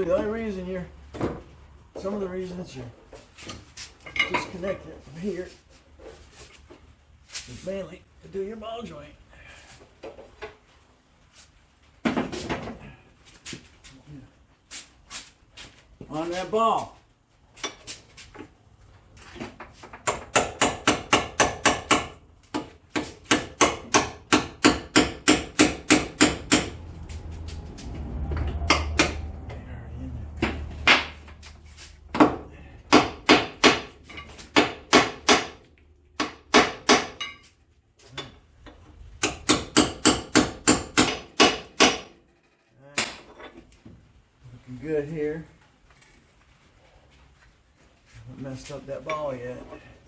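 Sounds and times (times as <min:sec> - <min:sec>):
low rumble: 0:26.1 - 0:32.9.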